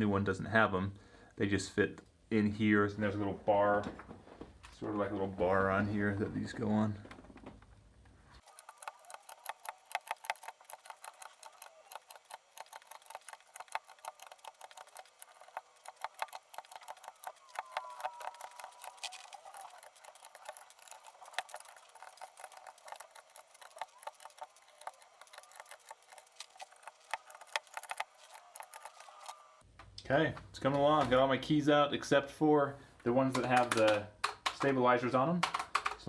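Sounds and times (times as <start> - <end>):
plastic keycaps clicking: 8.4 - 29.4.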